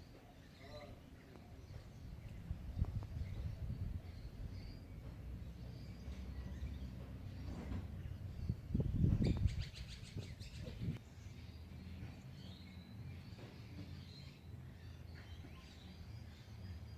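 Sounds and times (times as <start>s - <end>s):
birds chirping: 0.0s - 16.9s
wind rumbling on microphone: 1.8s - 5.1s, 7.0s - 11.0s.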